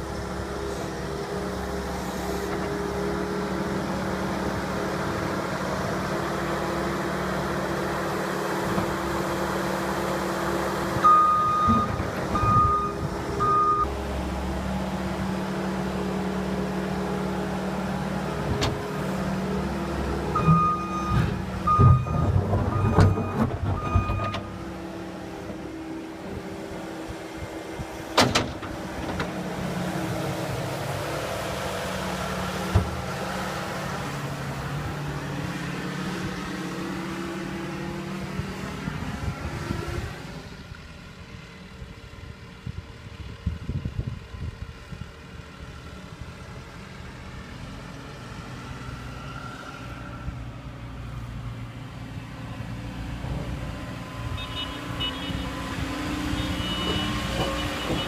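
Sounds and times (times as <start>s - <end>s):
skid steer engine running: 0.0s - 58.0s
backup alarm beeping: 11.0s - 13.9s, 20.4s - 24.5s.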